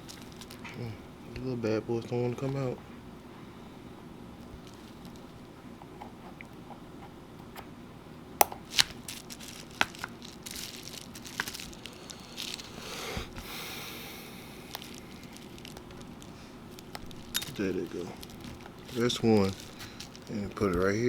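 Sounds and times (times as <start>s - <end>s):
crinkly rustle: 0.0s - 1.0s, 4.4s - 5.4s, 8.7s - 13.5s, 14.4s - 21.0s.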